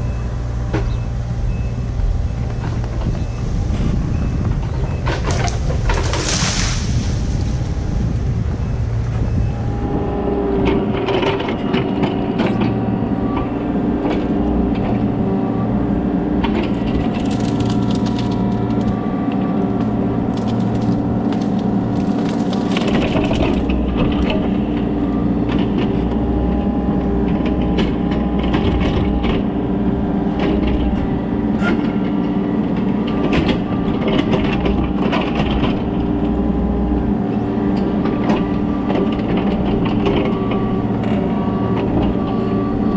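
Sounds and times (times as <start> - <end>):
excavator diesel engine running: 0.0 - 6.4, 7.2 - 42.9
wood cracking and splintering: 5.0 - 7.7, 16.5 - 24.4.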